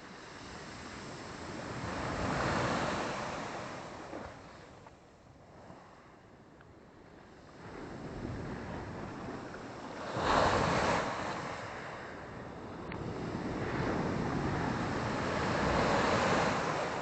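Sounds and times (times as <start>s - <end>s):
sea wave breaking on shore: 13.1s - 17.0s.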